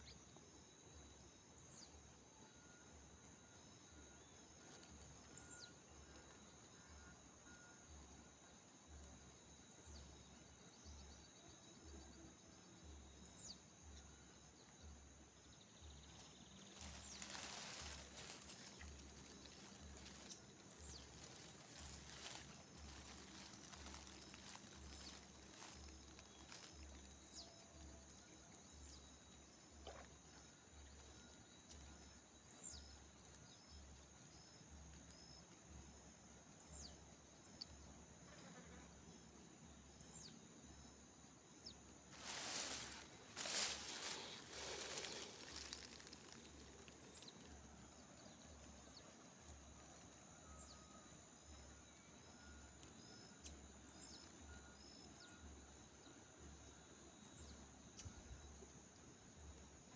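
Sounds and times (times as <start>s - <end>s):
insects trilling: 15.4s - 35.4s, 41.6s - 59.9s.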